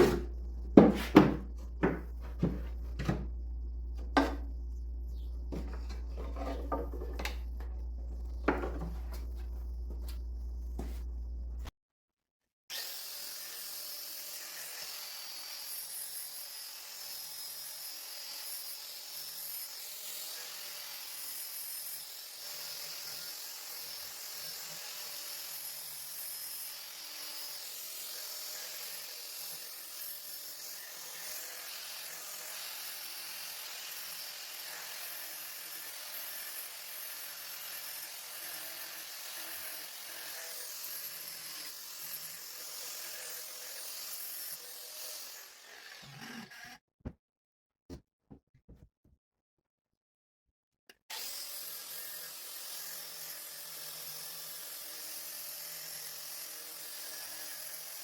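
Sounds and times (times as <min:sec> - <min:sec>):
angle grinder grinding metal: 0:00.0 - 0:11.4, 0:12.7 - 0:46.8.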